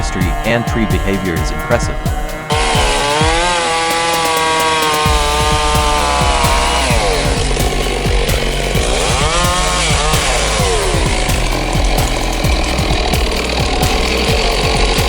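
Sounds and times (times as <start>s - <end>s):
steady low drone: 0.0s - 15.0s
chainsaw cutting wood: 2.5s - 15.0s.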